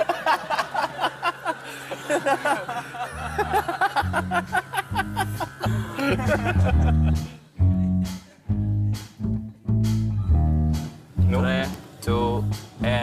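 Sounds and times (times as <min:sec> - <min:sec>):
chuckling snickering laughter: 0:00.0 - 0:08.5
background music with bass: 0:03.1 - 0:13.0.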